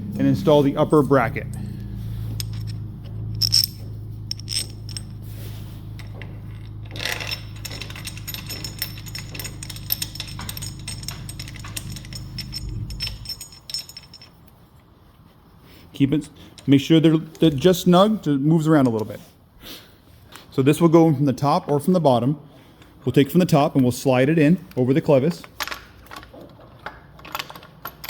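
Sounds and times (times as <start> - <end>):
steady low hum: 0.0 - 14.4
metal tools clinking: 0.2 - 14.6, 23.1 - 28.0.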